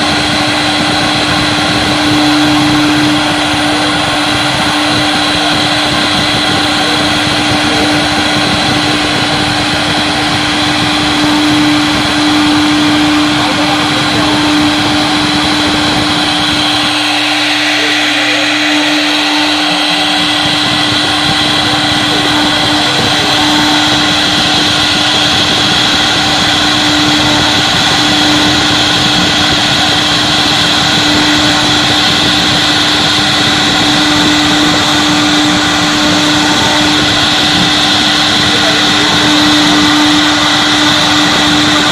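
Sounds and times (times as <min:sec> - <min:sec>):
router bit cutting wood: 0:00.0 - 0:41.9
router spindle whine: 0:00.0 - 0:41.9.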